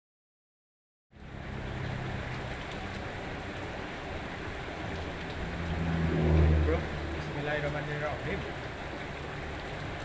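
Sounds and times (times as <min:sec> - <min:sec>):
steady outdoor background noise: 0:01.1 - 0:10.0
low rumble: 0:04.9 - 0:07.6.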